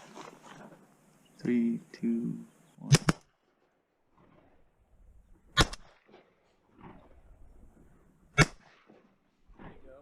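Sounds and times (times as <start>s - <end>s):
shotgun blasts: 2.8s - 3.3s, 5.5s - 7.1s, 8.3s - 9.0s.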